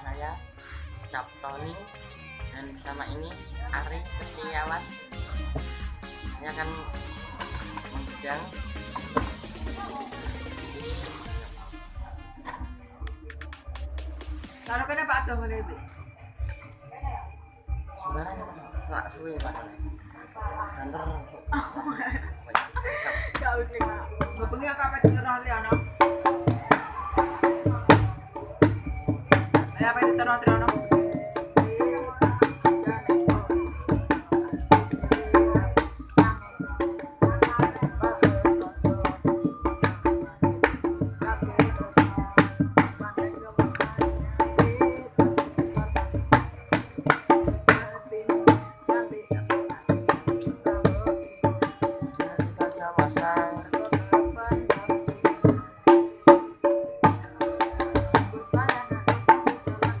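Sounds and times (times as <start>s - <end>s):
hand drum fast rhythm: 2.6s - 15.7s, 20.5s - 60.0s.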